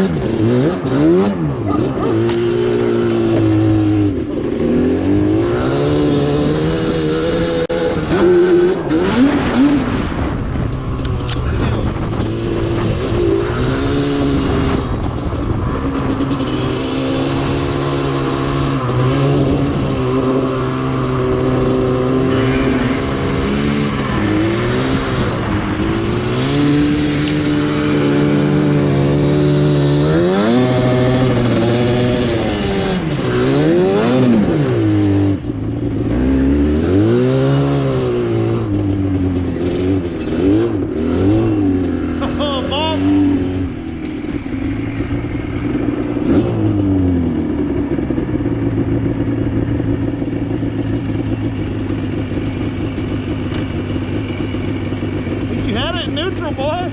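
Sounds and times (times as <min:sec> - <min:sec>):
atv engine revving: 0:00.0 - 0:56.9.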